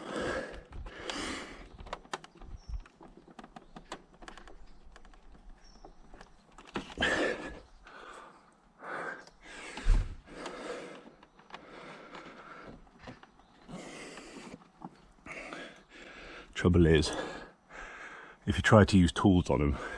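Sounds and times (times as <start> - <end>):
heavy breathing: 0.0 - 2.7, 6.7 - 18.5, 19.7 - 19.9.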